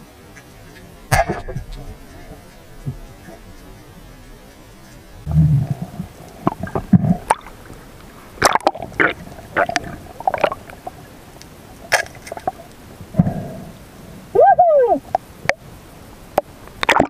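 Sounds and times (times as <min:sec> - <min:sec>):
water gurgling: 0:00.0 - 0:17.0
sharp underwater clicks and knocks: 0:00.7 - 0:03.7, 0:11.9 - 0:12.6, 0:16.4 - 0:17.0
muffled underwater thump: 0:01.1 - 0:03.4.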